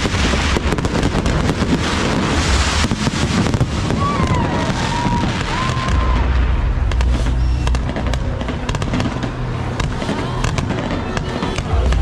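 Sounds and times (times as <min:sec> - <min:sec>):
firework whistle: 0:00.0 - 0:12.0
fireworks crackling and booming: 0:00.0 - 0:12.0
music: 0:05.6 - 0:12.0.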